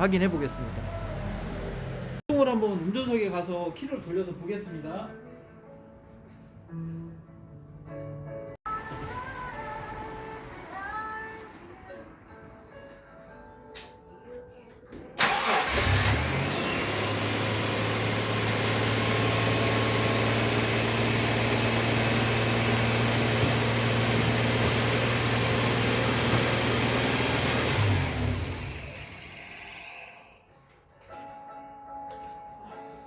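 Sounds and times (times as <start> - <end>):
starter motor cranking engine: 15.2 - 29.9.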